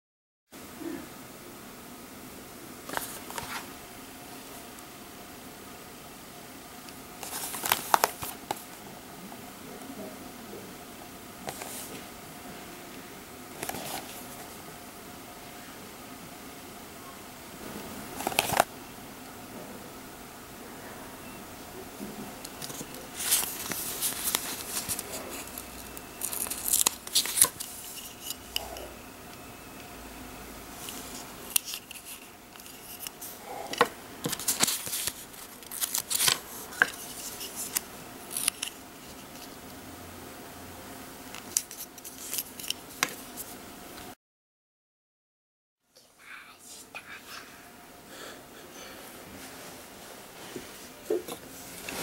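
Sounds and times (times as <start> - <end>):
plastic packaging crinkling: 7.2 - 8.7, 18.2 - 18.7, 22.4 - 28.9, 30.8 - 33.4, 34.2 - 39.5, 41.4 - 43.5.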